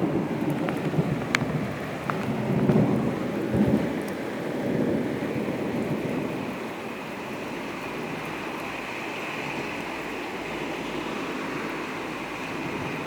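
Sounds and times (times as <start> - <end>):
heavy rain pouring: 0.0 - 13.0
low thunder rumble: 0.0 - 13.0.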